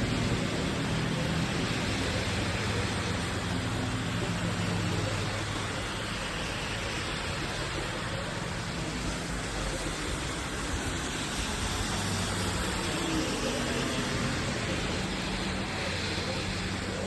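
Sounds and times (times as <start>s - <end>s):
steady rain hiss: 0.0s - 17.0s.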